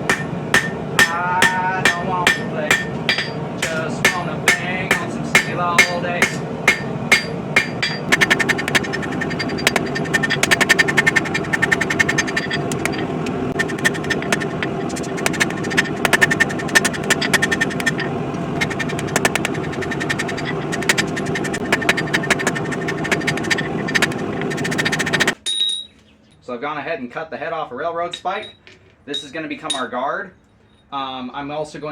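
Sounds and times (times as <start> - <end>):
hammer blows on steel: 0.0 - 25.4
mechanical running noise: 0.0 - 25.4.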